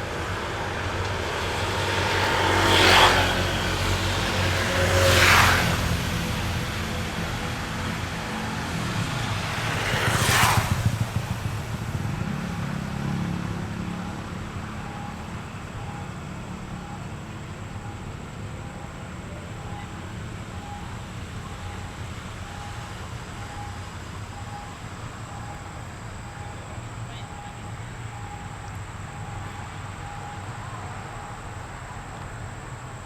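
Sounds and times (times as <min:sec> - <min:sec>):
vehicle passing close: 0:00.0 - 0:31.2
vehicle engines running: 0:00.0 - 0:33.0
faint beeping: 0:08.3 - 0:31.5.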